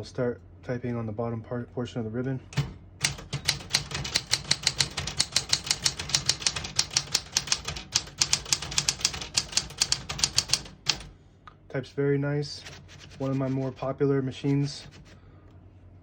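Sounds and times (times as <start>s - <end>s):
manual typewriter keystrokes: 2.6s - 11.1s.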